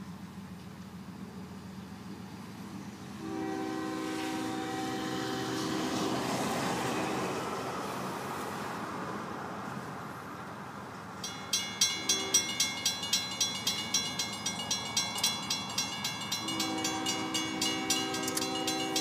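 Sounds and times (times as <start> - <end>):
train rushing noise: 1.1 - 19.0
locomotive horn: 3.1 - 7.9, 12.0 - 12.6, 16.2 - 19.0.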